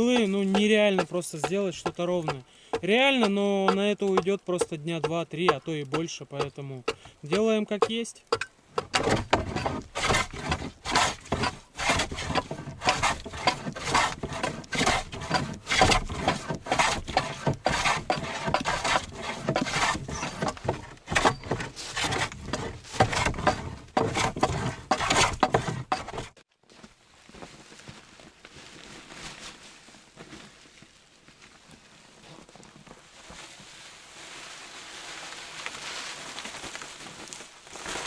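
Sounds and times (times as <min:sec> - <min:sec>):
hand tool scraping wooden board: 0:00.0 - 0:26.4.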